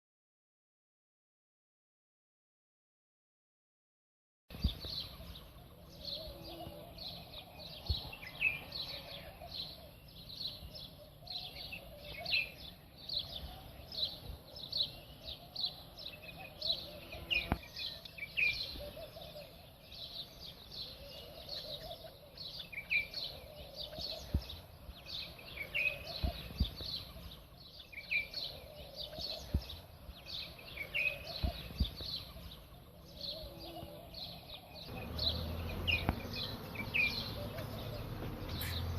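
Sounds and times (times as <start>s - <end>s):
small birds chirping: 4.5s - 38.9s.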